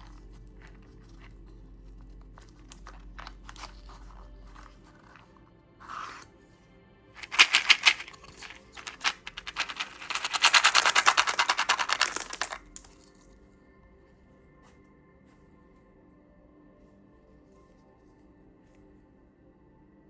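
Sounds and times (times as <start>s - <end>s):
plastic candy wrapper crinkling: 7.2s - 12.8s.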